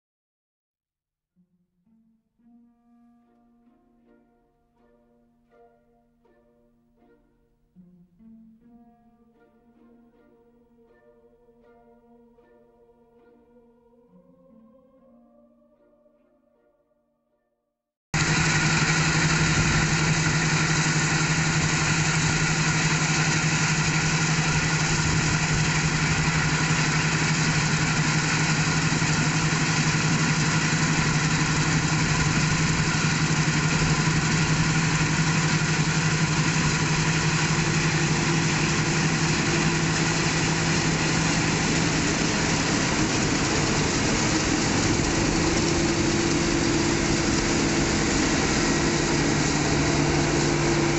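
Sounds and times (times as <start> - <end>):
combine harvester engine drone: 18.2 - 50.9.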